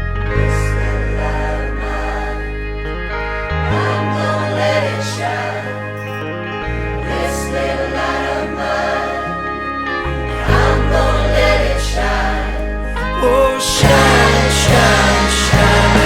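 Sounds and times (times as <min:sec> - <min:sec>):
choir singing gospel-style: 0:00.0 - 0:16.0
held bass notes: 0:00.0 - 0:16.0.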